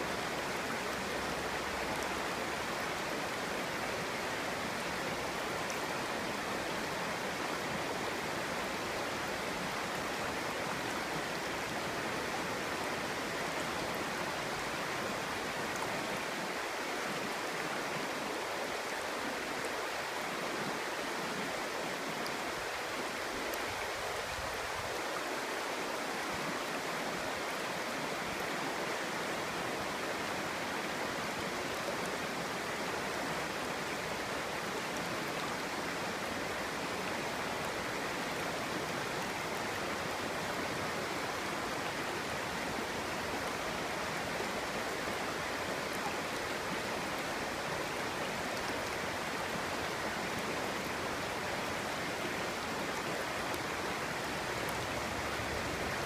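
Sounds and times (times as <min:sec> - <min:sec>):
stream babbling over rocks: 0:00.0 - 0:56.0.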